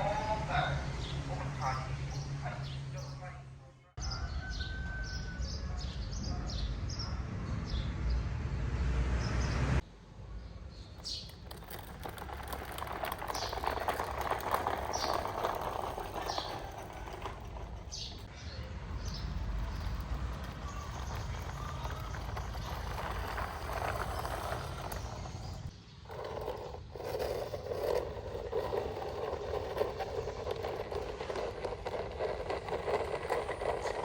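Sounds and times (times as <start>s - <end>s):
birds chirping: 10.3s - 34.0s.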